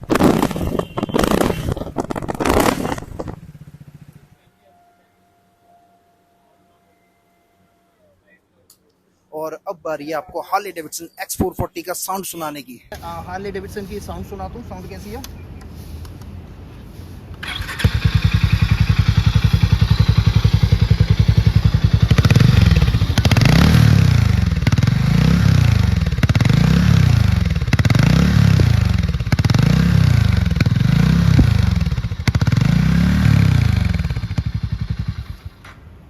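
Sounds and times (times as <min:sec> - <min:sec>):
engine revving: 0:00.0 - 0:04.4, 0:13.0 - 0:35.6
motorcycle engine idling: 0:00.8 - 0:04.6, 0:13.0 - 0:36.0.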